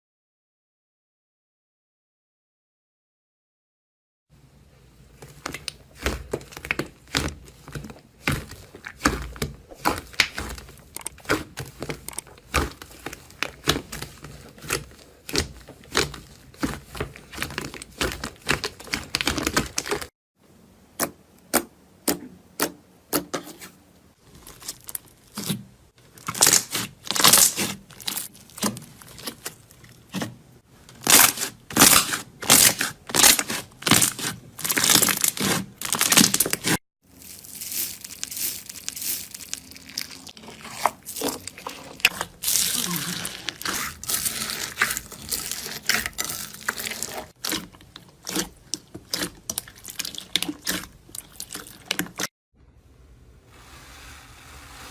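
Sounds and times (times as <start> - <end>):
slime crackling and popping: 26.2 - 30.3, 30.9 - 52.3.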